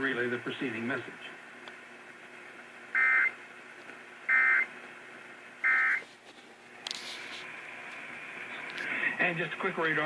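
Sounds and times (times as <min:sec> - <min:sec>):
radio hiss: 0:00.0 - 0:02.1, 0:06.8 - 0:10.0
digital data tone bursts: 0:04.3 - 0:04.7, 0:05.6 - 0:06.0.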